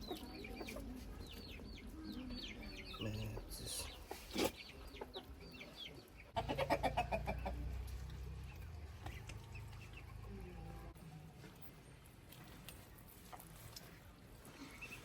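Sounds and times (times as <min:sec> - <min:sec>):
chicks peeping: 0:00.0 - 0:07.8
hens clucking: 0:00.0 - 0:10.5.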